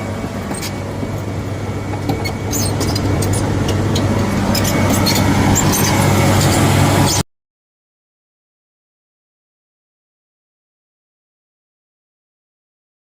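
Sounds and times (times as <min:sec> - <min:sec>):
bulldozer diesel engine running: 0:00.0 - 0:07.2.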